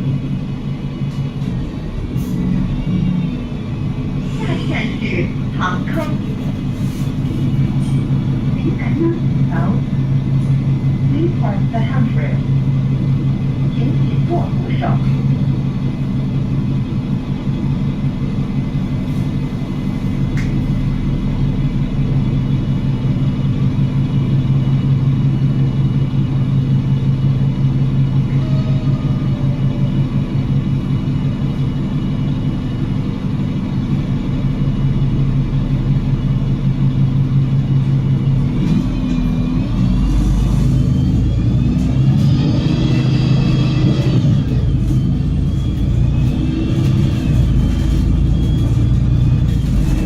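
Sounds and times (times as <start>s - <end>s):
bus engine drone: 0.0s - 50.0s
rising gearbox whine: 34.4s - 50.0s.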